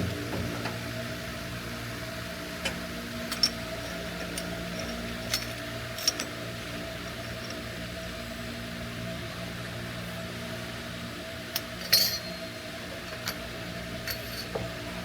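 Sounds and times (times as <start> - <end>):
machine hum: 0.0 - 15.0.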